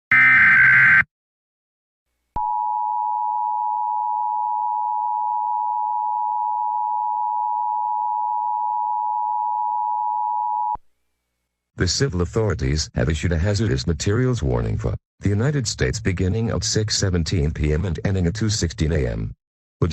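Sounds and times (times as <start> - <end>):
steady dual-tone beep: 2.4 - 10.8.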